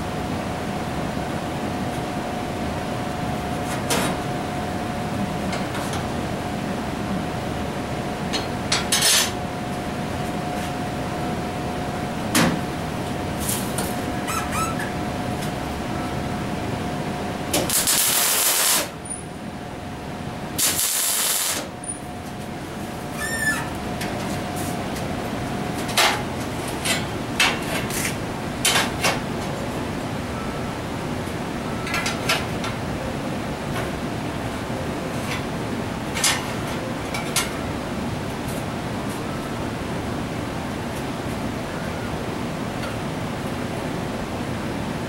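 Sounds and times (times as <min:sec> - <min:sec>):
steady background hum: 0:00.0 - 0:45.0
welding crackling hiss: 0:17.5 - 0:19.0, 0:20.5 - 0:21.7.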